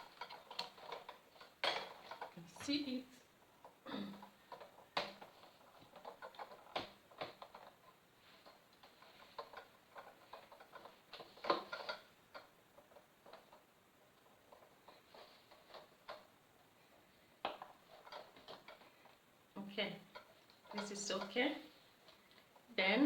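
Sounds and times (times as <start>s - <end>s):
clicks and knocks of parts handled: 0.0s - 2.7s, 3.6s - 16.4s.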